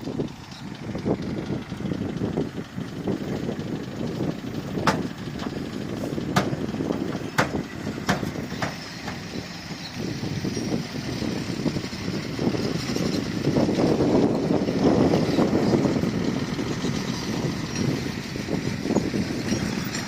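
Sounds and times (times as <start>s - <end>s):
bulldozer diesel engine running: 0.0s - 20.0s
sharp knocks: 4.8s - 5.6s, 6.3s - 6.6s, 7.3s - 9.2s.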